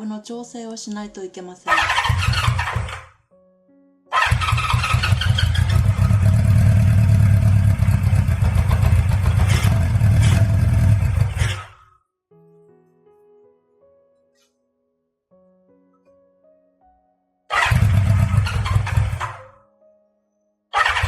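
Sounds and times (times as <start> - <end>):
motorcycle engine cranking and firing: 1.7 - 3.1, 4.2 - 11.9, 17.5 - 19.5, 20.8 - 21.0.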